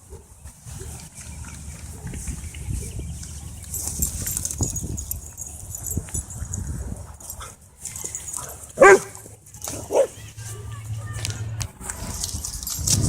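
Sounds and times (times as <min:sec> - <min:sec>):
rumble of wind and movement: 0:00.0 - 0:13.0
dog barking: 0:08.8 - 0:09.2, 0:09.8 - 0:10.2.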